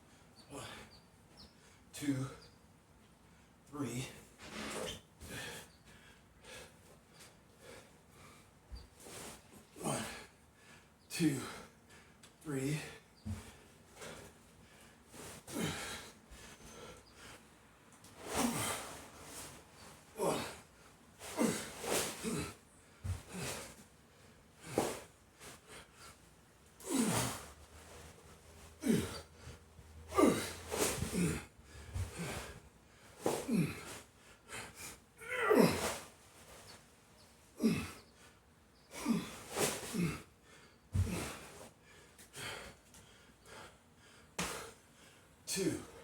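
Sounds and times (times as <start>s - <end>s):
man grunting and exhaling: 9.8s - 10.2s, 15.5s - 16.1s, 18.2s - 18.9s, 20.1s - 23.7s, 26.8s - 27.5s, 28.8s - 29.3s, 30.1s - 32.6s, 33.2s - 34.0s, 34.6s - 36.0s, 37.6s - 38.0s, 38.9s - 40.3s, 41.0s - 41.5s.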